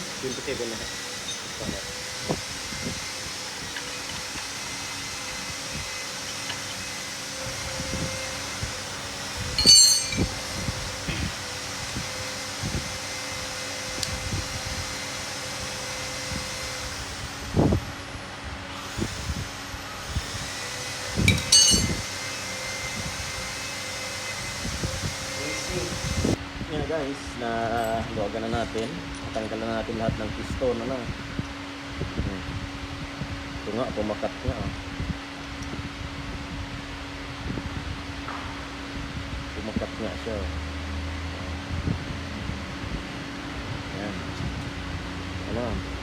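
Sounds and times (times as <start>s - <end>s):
fan hum: 0.0s - 46.0s
hand tools clinking on metal: 0.1s - 1.6s, 9.6s - 10.4s, 21.3s - 22.1s, 27.7s - 29.6s
ringing metal clinks: 9.6s - 10.4s, 21.3s - 22.0s.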